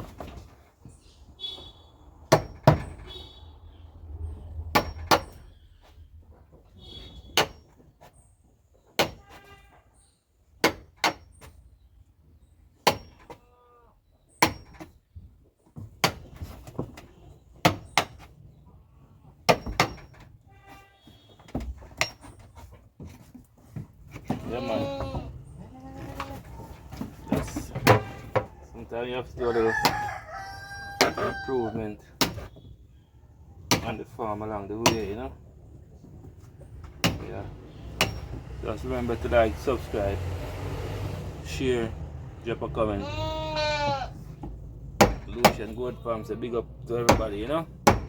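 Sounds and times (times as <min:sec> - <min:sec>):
goats bleating: 0:24.4 - 0:26.4, 0:42.8 - 0:44.2.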